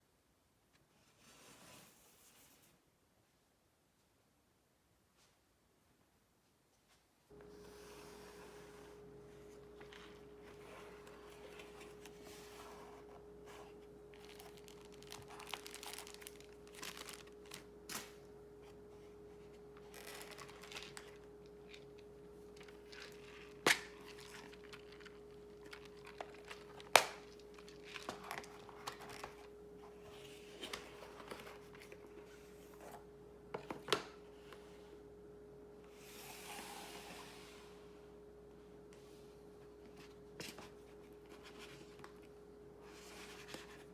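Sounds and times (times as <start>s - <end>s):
steady electrical hum: 1.9s - 43.9s
rustling and crinkling: 6.7s - 35.0s, 38.9s - 43.9s.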